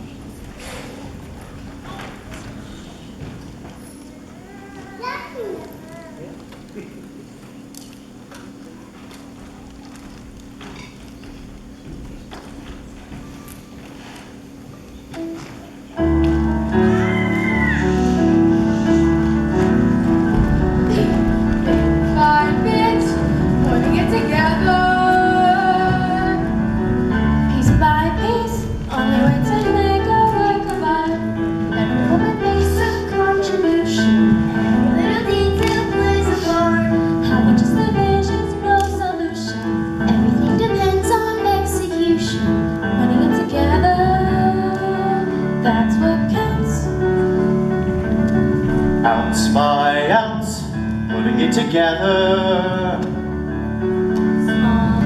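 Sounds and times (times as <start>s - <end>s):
instrumental accompaniment: 15.0s - 55.0s.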